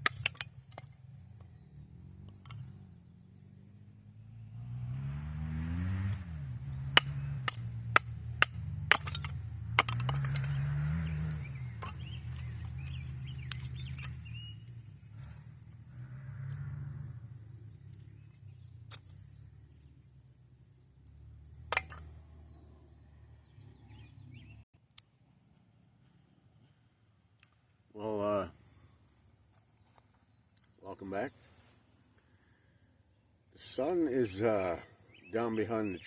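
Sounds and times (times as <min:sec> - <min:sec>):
distant small engine revving: 0:01.1 - 0:19.9.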